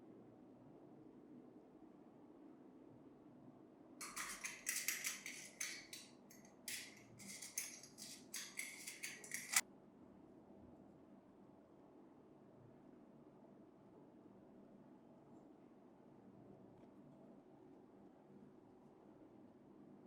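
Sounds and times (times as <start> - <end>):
hand tool rasping strokes: 4.0 - 9.6.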